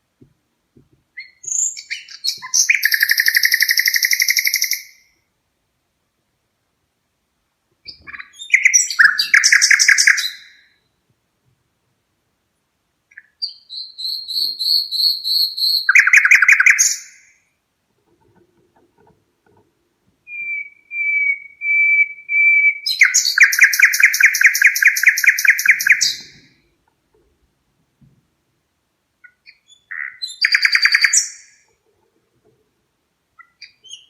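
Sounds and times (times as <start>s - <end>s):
parrot whistles and trills: 20.3s - 26.4s.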